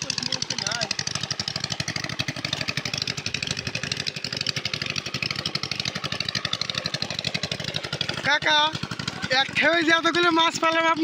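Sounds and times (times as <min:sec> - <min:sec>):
small engine chugging: 0:00.0 - 0:11.0.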